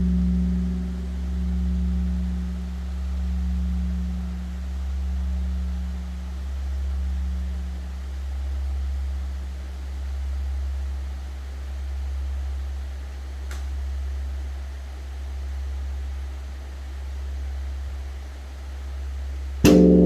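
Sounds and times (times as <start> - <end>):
large temple bell humming: 0.0 - 7.7, 19.7 - 20.0.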